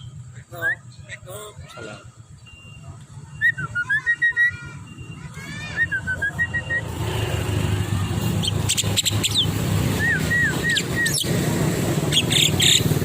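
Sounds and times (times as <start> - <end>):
motorcycle engine running: 0.0 - 4.0, 4.7 - 13.0
bird chirping: 0.0 - 13.0
quick whistled notes: 2.6 - 7.1, 8.1 - 11.4.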